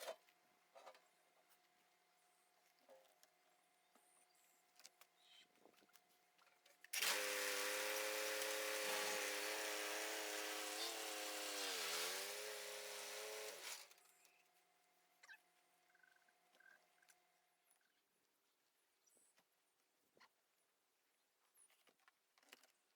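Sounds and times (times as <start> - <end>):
power tool motor whining: 7.0 - 13.9.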